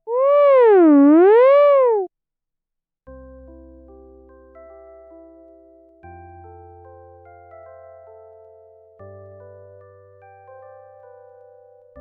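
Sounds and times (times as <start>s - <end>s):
held bass note: 0.1s - 2.1s.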